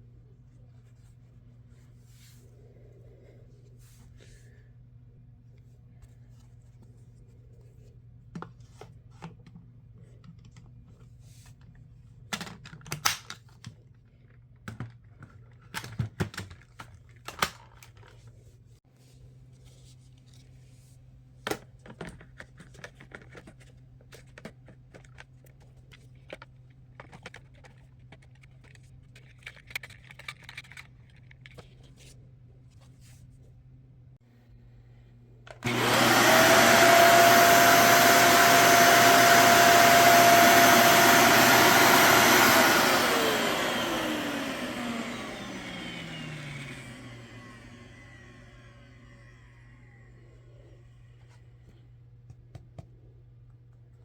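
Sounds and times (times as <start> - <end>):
clicks and scrapes on plastic parts: 21.5 - 32.2.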